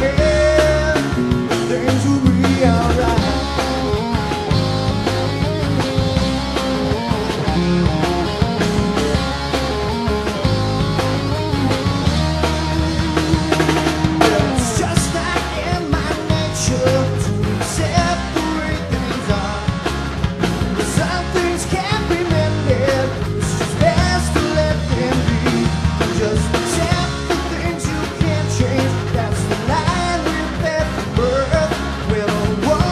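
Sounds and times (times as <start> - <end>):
person singing: 0.0 - 5.8, 12.2 - 19.9, 20.8 - 32.9
drum kit: 0.0 - 32.9
rock song: 0.0 - 32.9.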